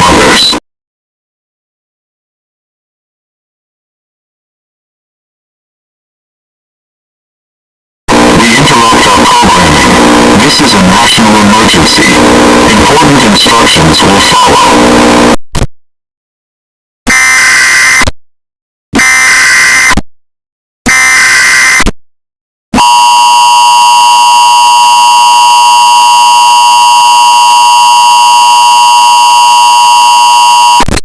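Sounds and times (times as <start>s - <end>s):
two-tone attention signal: 14.2s - 14.9s
screechy digital data bursts: 17.1s - 18.1s, 19.0s - 19.9s, 20.9s - 21.9s.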